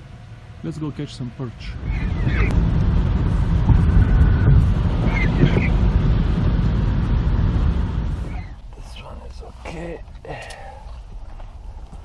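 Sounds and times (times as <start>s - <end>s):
wind buffeting microphone: 1.6s - 9.1s.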